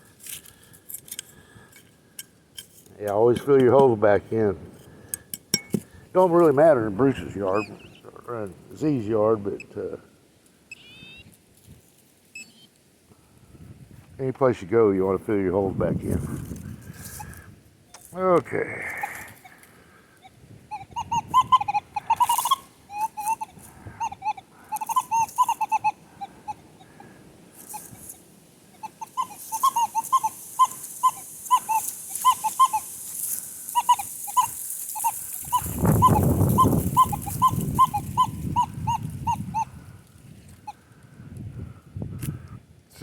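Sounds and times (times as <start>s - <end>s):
metal detector beeps: 10.7s - 11.3s, 12.3s - 12.7s
wind rumbling on microphone: 13.4s - 14.2s, 15.2s - 17.7s, 35.2s - 43.0s.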